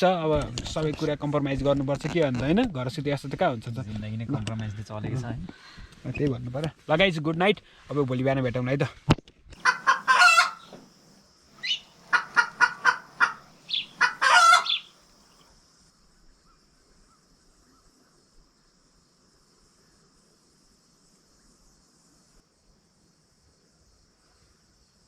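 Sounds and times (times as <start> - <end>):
crickets chirping: 0.0 - 8.9, 9.5 - 25.0
hen cackling: 9.6 - 10.8, 11.6 - 15.0.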